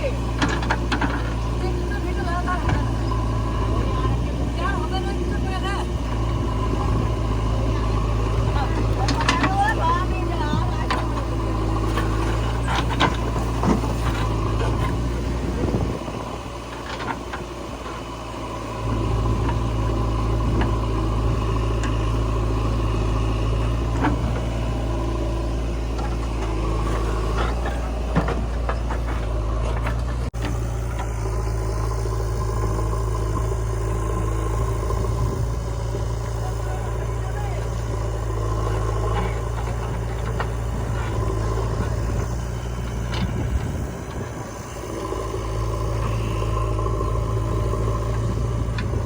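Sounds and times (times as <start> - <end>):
diesel engine running: 0.0 - 49.0
knocks and clanks: 26.0 - 30.6.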